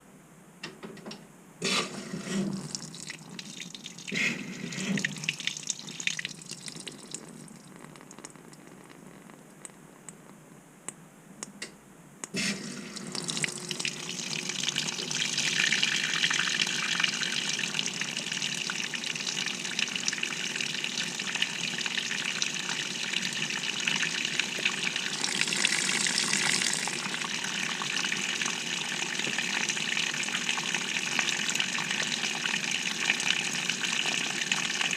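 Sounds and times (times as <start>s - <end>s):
water rushing into washing machine: 1.6s - 6.3s, 12.4s - 34.9s.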